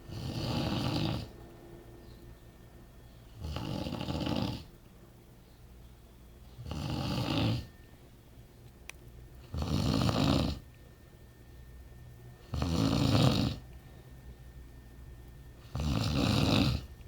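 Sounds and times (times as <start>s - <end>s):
man snoring: 0.1s - 1.3s, 3.4s - 4.7s, 6.6s - 7.7s, 9.5s - 10.6s, 12.5s - 13.6s, 15.7s - 16.9s.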